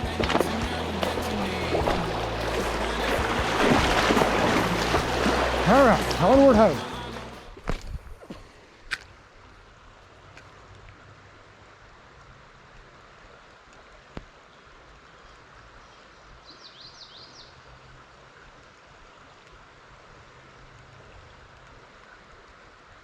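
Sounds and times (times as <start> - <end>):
creek water flowing: 0.0 - 23.0
bird chirping: 15.8 - 17.6.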